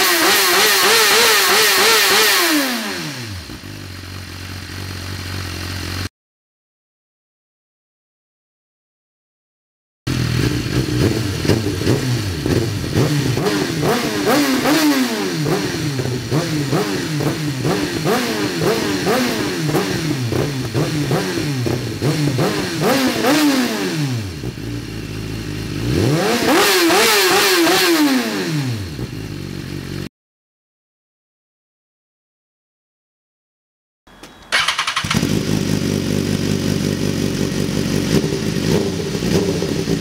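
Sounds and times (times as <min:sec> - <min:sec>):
motorcycle engine revving: 0:00.0 - 0:06.1, 0:10.1 - 0:30.1, 0:34.5 - 0:40.0.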